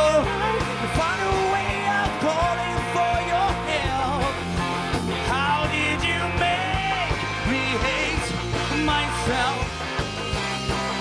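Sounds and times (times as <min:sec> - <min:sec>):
drum beat: 0:00.0 - 0:11.0
pop rock band playing: 0:00.0 - 0:11.0.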